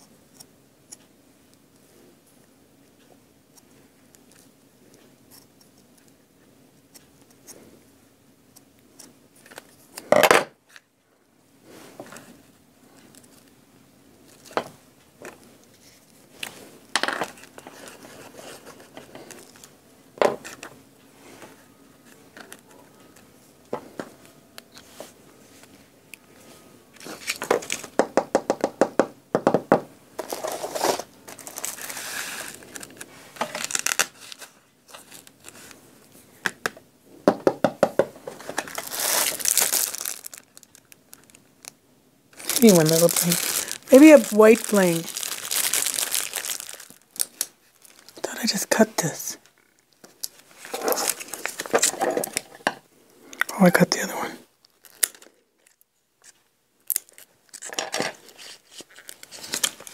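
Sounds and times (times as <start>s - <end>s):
rustling: 30.2s - 36.4s, 38.2s - 41.7s, 42.3s - 52.5s, 54.6s - 59.9s.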